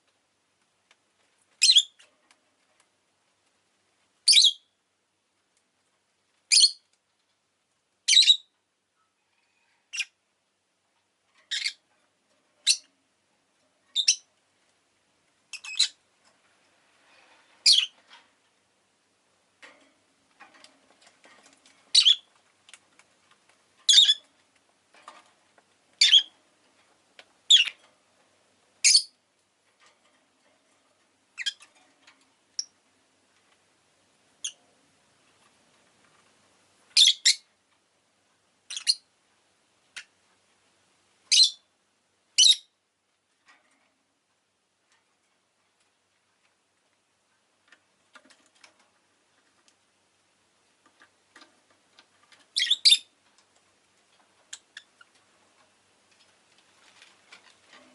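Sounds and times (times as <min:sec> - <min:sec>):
lovebird chirping: 0:01.6 - 0:02.0, 0:04.2 - 0:04.7, 0:06.5 - 0:06.8, 0:08.1 - 0:08.5, 0:09.9 - 0:10.2, 0:11.5 - 0:11.8, 0:12.6 - 0:12.9, 0:13.9 - 0:14.3, 0:15.5 - 0:16.0, 0:17.6 - 0:18.0, 0:21.9 - 0:22.3, 0:23.9 - 0:24.2, 0:26.0 - 0:26.3, 0:27.5 - 0:27.8, 0:28.8 - 0:29.1, 0:31.4 - 0:31.6, 0:36.9 - 0:37.5, 0:38.7 - 0:39.1, 0:41.3 - 0:41.7, 0:42.4 - 0:42.7, 0:52.5 - 0:53.1.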